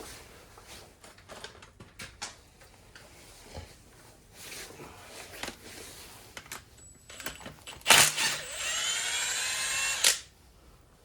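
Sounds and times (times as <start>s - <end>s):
tools clicking: 7.1s - 10.3s
electric power tool whining: 7.8s - 10.3s.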